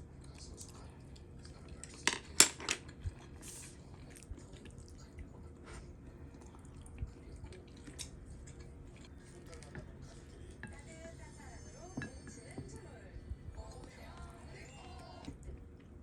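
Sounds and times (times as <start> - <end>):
dishes and cutlery clinking: 1.8 - 3.0, 7.8 - 12.8.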